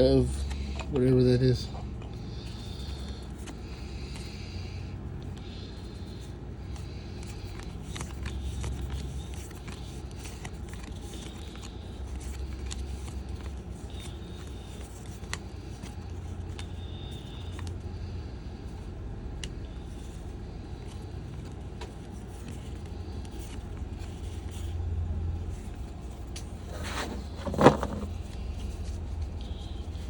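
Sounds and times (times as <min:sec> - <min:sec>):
steady low hum: 0:00.0 - 0:30.0
cards being flipped: 0:06.6 - 0:17.8, 0:20.8 - 0:24.8, 0:25.4 - 0:30.0.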